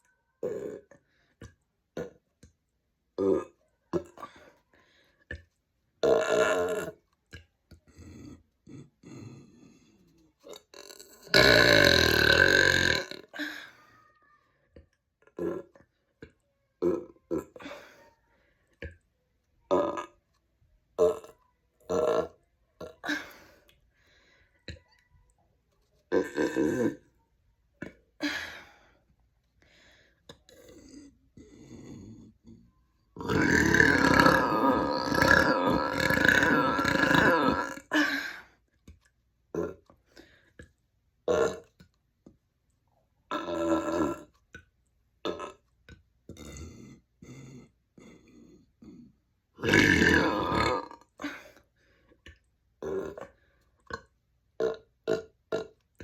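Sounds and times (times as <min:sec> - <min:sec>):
person burping: 0:00.4 - 0:01.0, 0:01.9 - 0:02.5, 0:03.1 - 0:04.6, 0:05.3 - 0:07.1, 0:10.4 - 0:13.8, 0:15.2 - 0:17.9, 0:19.7 - 0:20.2, 0:21.0 - 0:23.5, 0:26.1 - 0:27.2, 0:30.3 - 0:32.6, 0:33.2 - 0:38.5, 0:39.5 - 0:40.0, 0:41.2 - 0:41.8, 0:43.3 - 0:44.4, 0:45.2 - 0:45.7, 0:46.3 - 0:51.6, 0:52.8 - 0:56.0.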